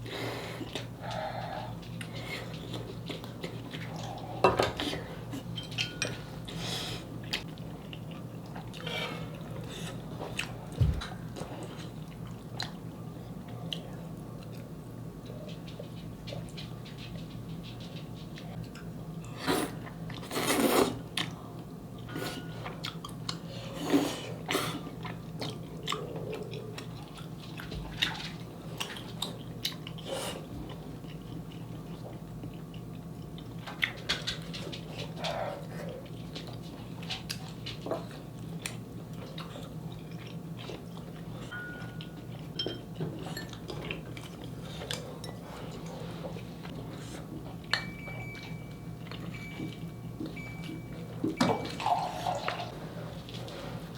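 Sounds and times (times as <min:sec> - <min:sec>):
steady low hum: 0:00.0 - 0:20.4
chewing and biting: 0:22.7 - 0:53.7.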